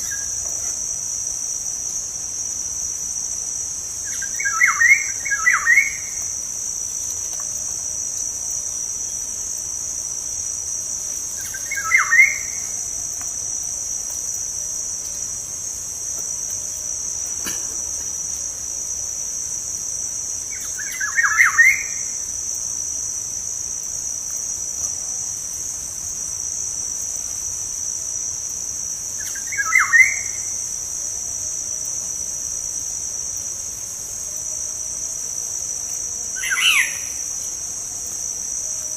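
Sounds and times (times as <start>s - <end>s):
high-pitched insect buzz: 25.2s - 38.9s.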